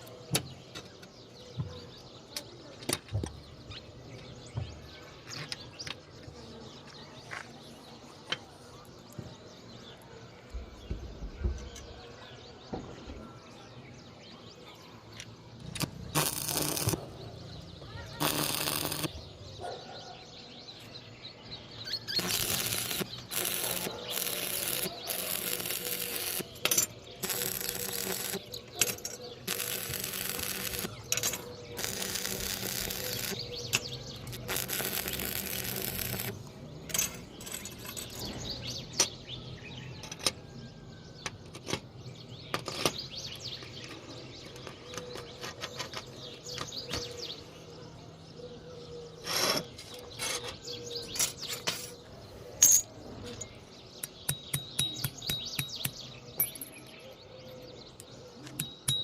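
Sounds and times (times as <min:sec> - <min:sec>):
harsh metalworking noise: 0:15.8 - 0:17.1, 0:18.0 - 0:19.2, 0:22.1 - 0:38.4
sharp metallic clinks: 0:22.1 - 0:39.2, 0:52.6 - 0:57.0, 0:58.5 - 0:59.0.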